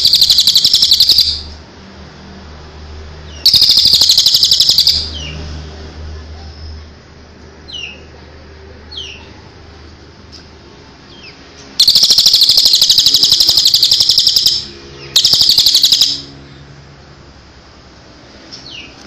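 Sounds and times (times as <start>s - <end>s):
songbird buzzy trill: 0.0s - 1.6s, 3.4s - 5.3s, 11.8s - 16.4s.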